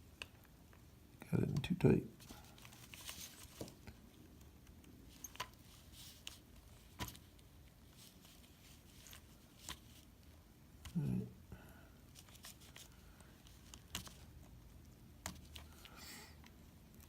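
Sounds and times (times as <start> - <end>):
plastic headset parts clicking: 12.1 - 14.5, 15.2 - 17.0.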